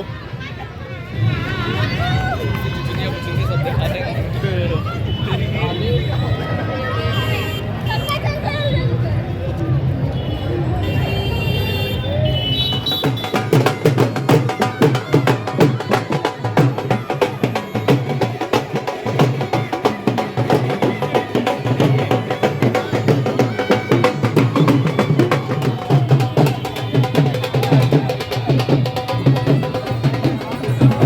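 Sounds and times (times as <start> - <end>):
fast dense percussion: 12.6 - 31.0.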